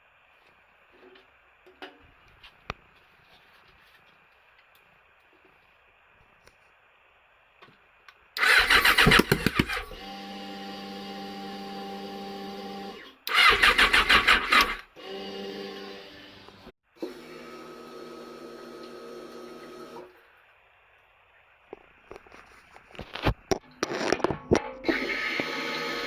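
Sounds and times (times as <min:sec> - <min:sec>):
motorcycle electric starter cranking: 0:08.4 - 0:10.2, 0:12.9 - 0:15.0.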